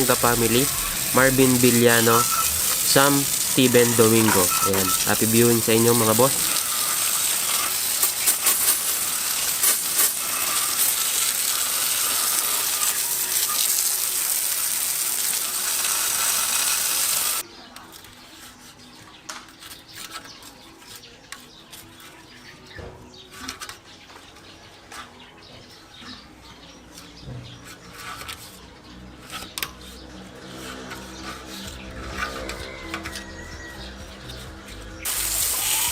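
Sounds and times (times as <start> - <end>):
paint spraying hiss: 35.0 - 35.9.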